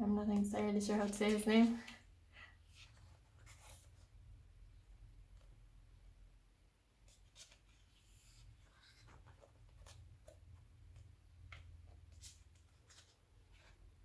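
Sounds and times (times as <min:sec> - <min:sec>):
magazine pages rustling: 0:00.9 - 0:02.0.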